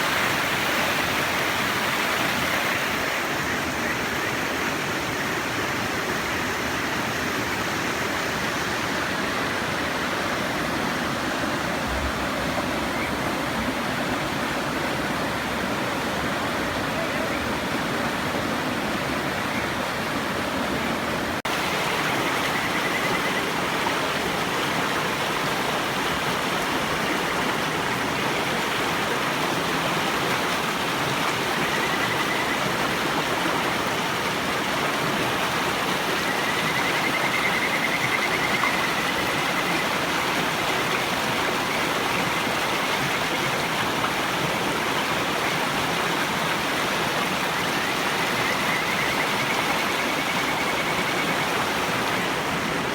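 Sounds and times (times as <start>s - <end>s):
river water rushing: 0.0s - 52.9s
frogs whistle-like calls: 21.5s - 24.2s, 31.3s - 33.2s, 35.7s - 43.8s, 47.1s - 52.5s.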